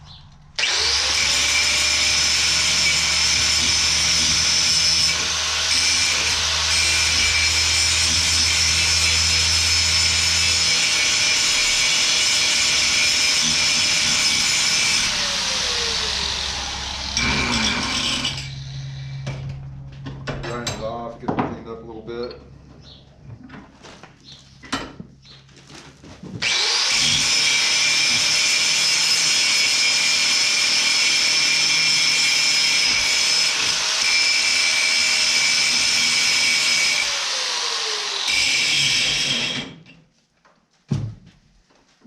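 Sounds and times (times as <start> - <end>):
power grinder grinding metal: 0.6 - 19.6, 26.4 - 39.8.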